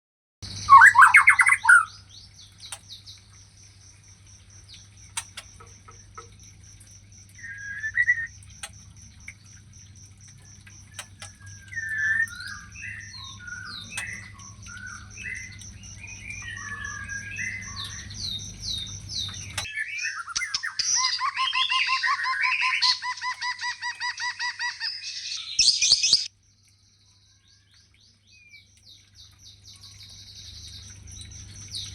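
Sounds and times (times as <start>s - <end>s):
bird singing whistles and trills: 0.5s - 2.8s, 7.4s - 8.3s, 10.9s - 26.3s.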